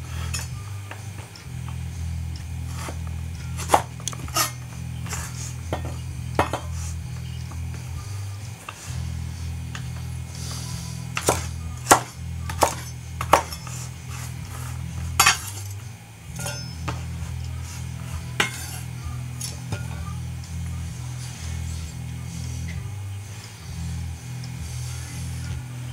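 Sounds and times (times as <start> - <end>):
background music: 0.0 - 25.9.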